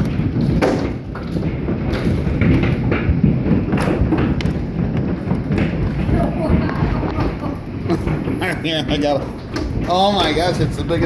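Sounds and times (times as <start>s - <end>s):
hailstones pounding down: 0.0s - 11.0s.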